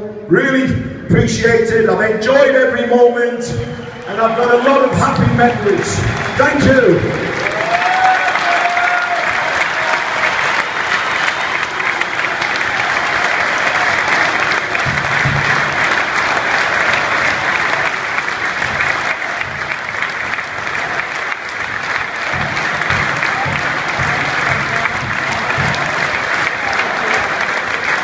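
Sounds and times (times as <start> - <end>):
stadium crowd applauding: 3.4 - 28.0.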